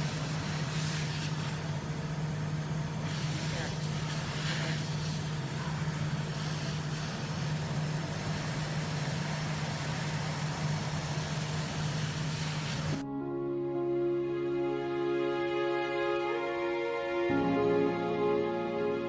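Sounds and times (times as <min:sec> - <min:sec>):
low machine hum with hiss: 0:00.0 - 0:13.0
soft background music: 0:13.0 - 0:19.0.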